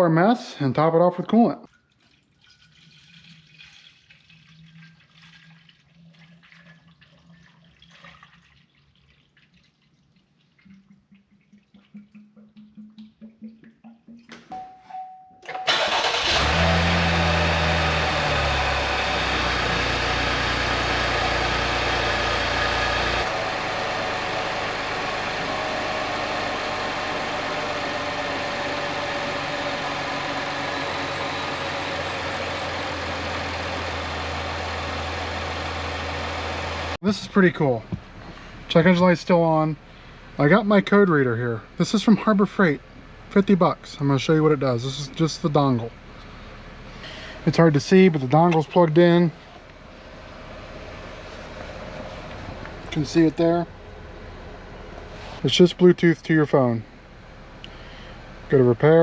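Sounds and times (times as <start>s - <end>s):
car engine starting and idling: 15.5s - 59.0s.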